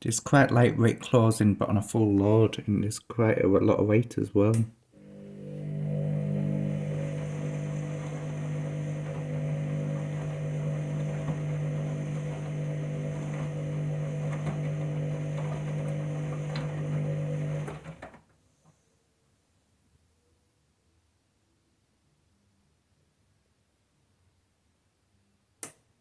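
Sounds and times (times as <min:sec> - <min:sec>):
washing machine motor humming: 0:05.0 - 0:18.2.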